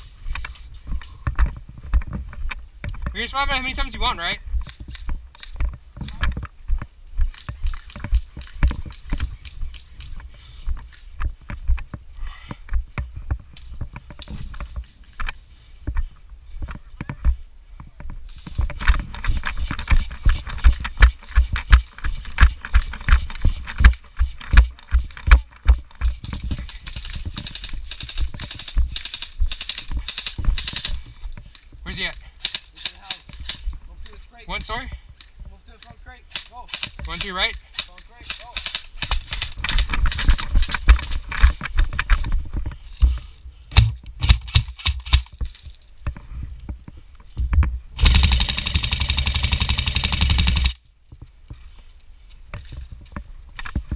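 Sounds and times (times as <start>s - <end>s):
gear clatter: 48.0s - 50.8s.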